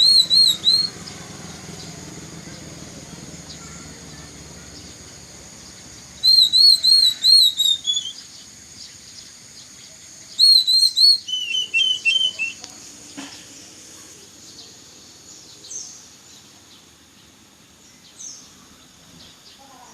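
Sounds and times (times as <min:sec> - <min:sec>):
bird whistling song: 0:00.0 - 0:01.9, 0:05.6 - 0:12.7
faint bird calls: 0:00.0 - 0:17.4
steady high hiss: 0:00.0 - 0:19.9.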